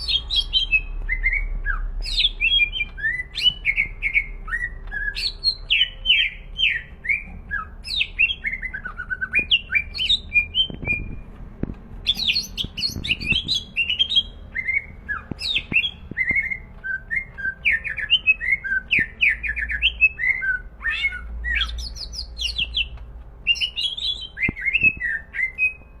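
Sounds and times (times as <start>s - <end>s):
bird singing whistled trills: 0.0s - 11.2s, 12.0s - 26.0s.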